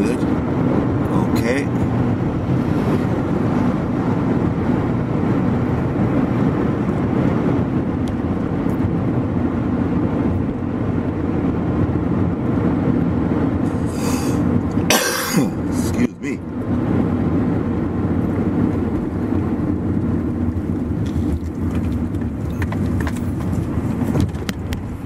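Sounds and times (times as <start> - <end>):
vehicle engine and road noise: 0.0 - 25.0.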